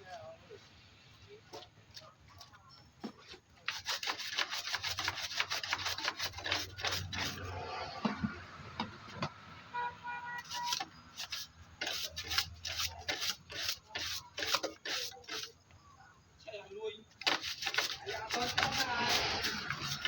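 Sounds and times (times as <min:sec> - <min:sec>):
hand scraping hard surface: 0:03.0 - 0:08.4, 0:10.4 - 0:15.6, 0:17.2 - 0:20.0.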